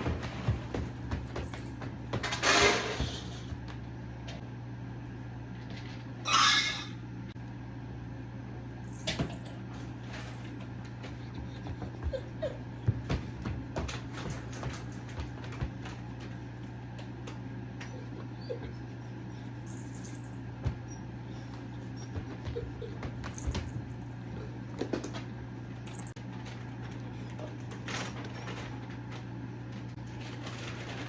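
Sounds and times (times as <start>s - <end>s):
dog whining faintly: 17.7s - 20.1s.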